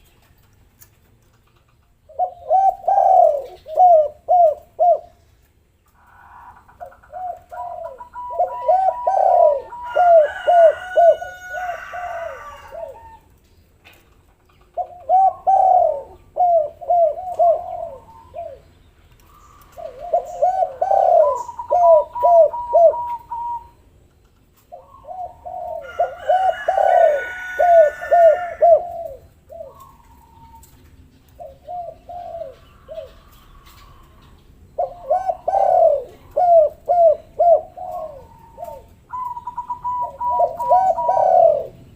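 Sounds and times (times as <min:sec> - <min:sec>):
doves cooing: 0:01.2 - 0:41.9
high bird chirping: 0:17.2 - 0:23.9.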